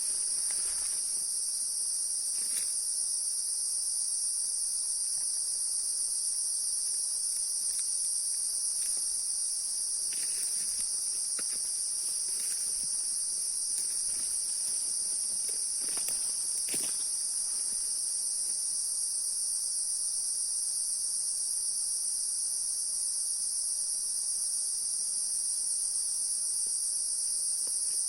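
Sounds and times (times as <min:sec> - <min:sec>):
insects trilling: 0:00.0 - 0:21.7.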